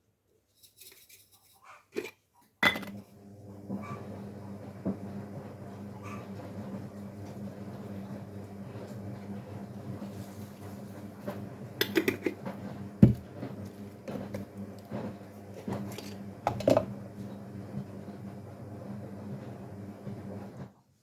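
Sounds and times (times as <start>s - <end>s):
dishes and utensils clattering: 0.7s - 3.0s, 11.8s - 12.4s.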